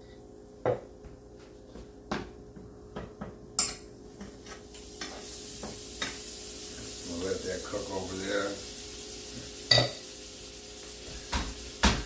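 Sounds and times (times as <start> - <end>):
sizzle in a pan: 3.6 - 12.0.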